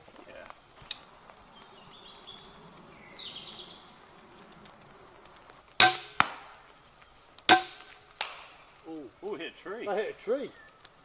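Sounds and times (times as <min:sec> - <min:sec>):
birds chirping faintly: 0:00.0 - 0:11.0
crossbow firing thwack: 0:05.8 - 0:06.6, 0:07.5 - 0:08.5
sharp crack: 0:05.8 - 0:06.8, 0:07.4 - 0:08.8.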